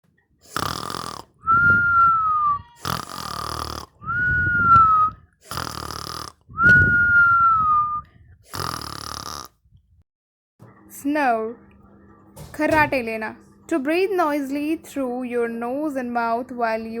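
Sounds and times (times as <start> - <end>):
snoring with whistle: 0.4 - 9.6.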